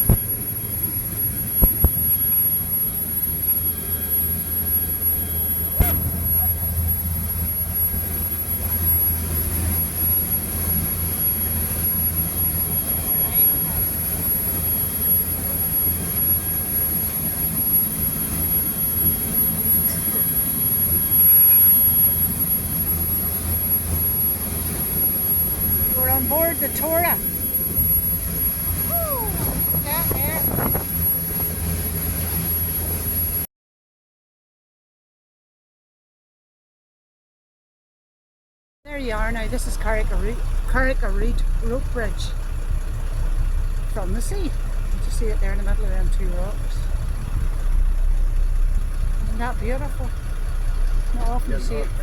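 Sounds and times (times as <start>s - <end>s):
boat engine droning: 0.0s - 33.5s, 38.9s - 52.0s.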